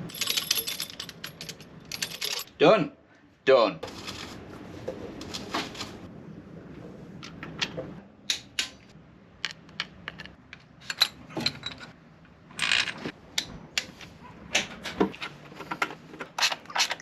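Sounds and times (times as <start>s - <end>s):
metal engine parts clinking: 0.0s - 2.5s, 9.4s - 13.1s
metal rattle: 0.0s - 2.5s.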